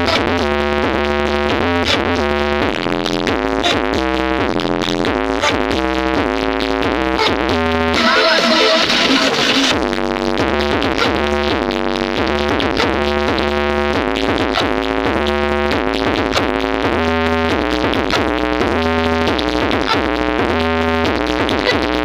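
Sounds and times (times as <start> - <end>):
electronic dance music: 7.2 - 13.3.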